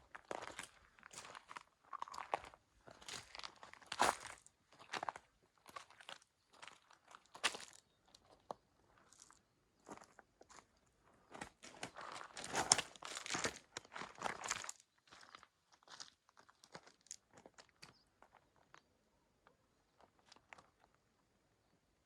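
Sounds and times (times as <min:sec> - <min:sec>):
footsteps crunching on gravel: 0:00.2 - 0:07.8, 0:11.3 - 0:18.4.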